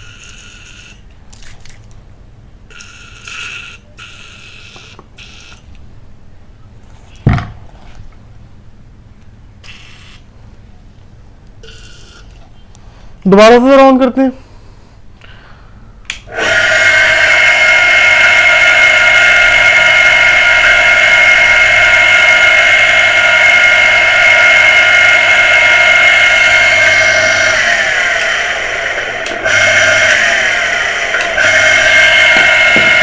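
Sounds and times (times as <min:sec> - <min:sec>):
click: 0:16.0 - 0:16.3
electric pump motor whining: 0:16.3 - 0:33.0.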